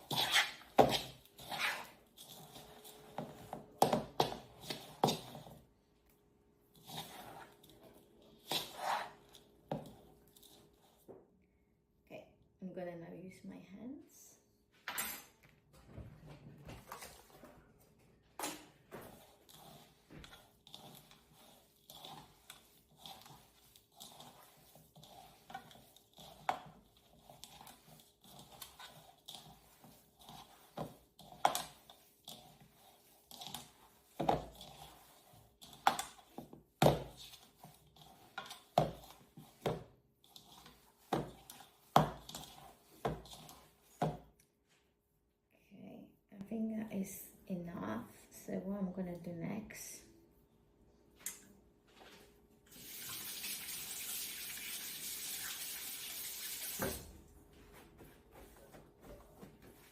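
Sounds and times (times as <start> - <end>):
hands kneading dough: 0.0 - 11.1, 18.7 - 44.6, 56.0 - 59.9.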